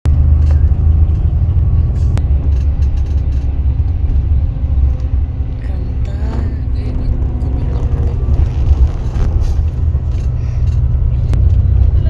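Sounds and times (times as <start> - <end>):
low rumble: 0.1 - 12.0
faint voices: 5.6 - 10.7.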